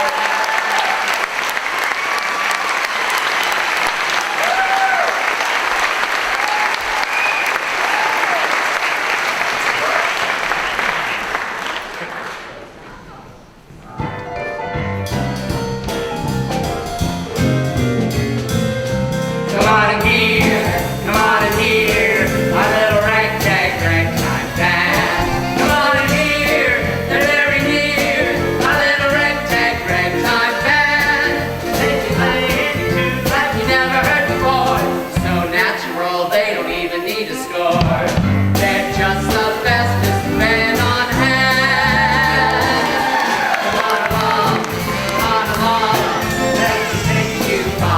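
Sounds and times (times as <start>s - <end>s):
live band playing: 14.2s - 47.9s
bass line: 14.7s - 35.6s, 37.8s - 43.1s, 44.1s - 47.9s
person singing: 19.5s - 47.9s.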